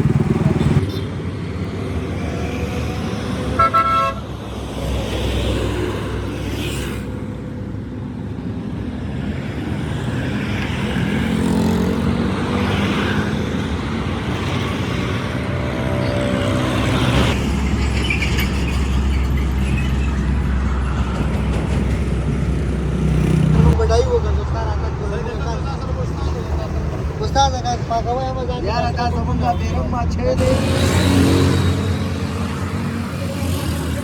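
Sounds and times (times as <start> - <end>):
road traffic noise: 0.0 - 34.0.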